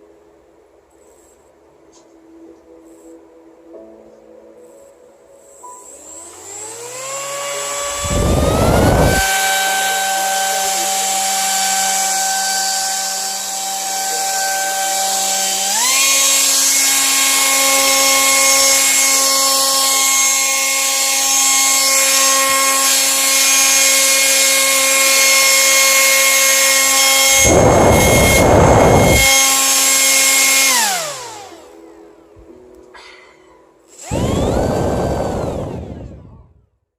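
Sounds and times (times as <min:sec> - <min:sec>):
electric motor high whine: 0:05.6 - 0:32.3, 0:33.9 - 0:36.7
loud rushing burst: 0:07.8 - 0:09.8.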